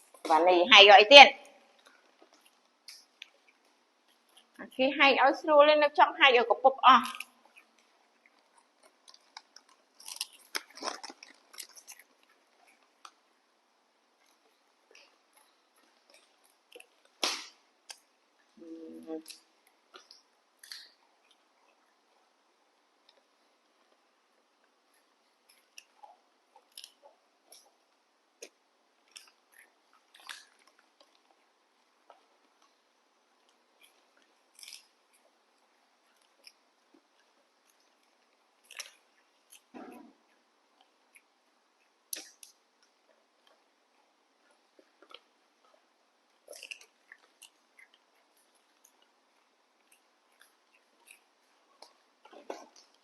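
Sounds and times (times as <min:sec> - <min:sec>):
crunchy snack being chewed: 0:07.0 - 0:13.4, 0:24.8 - 0:53.0.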